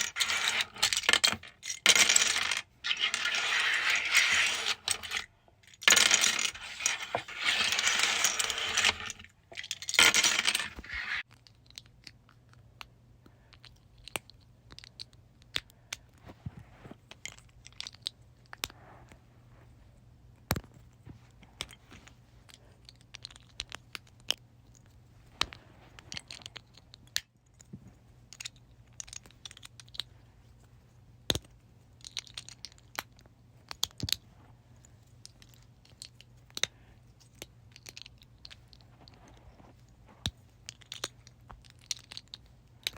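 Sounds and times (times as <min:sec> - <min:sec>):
plastic bricks clattering on table: 0:00.0 - 0:11.2.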